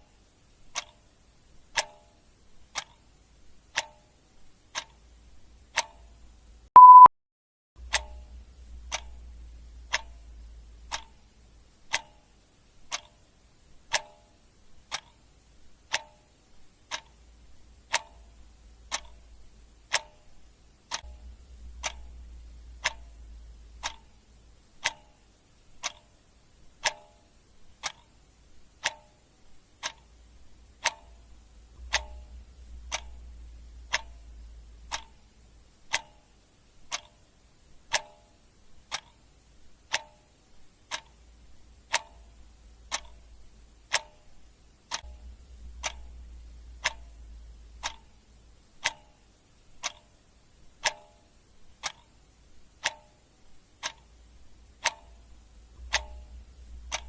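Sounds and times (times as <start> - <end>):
clock ticking: 0.0 - 7.1, 7.8 - 57.0
faint low hum: 7.8 - 57.0.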